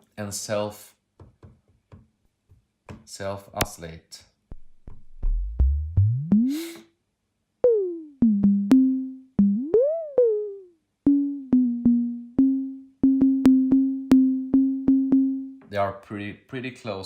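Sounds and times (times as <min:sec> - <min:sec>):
synthesizer sine tone notes: 0:05.1 - 0:06.8, 0:07.6 - 0:15.6.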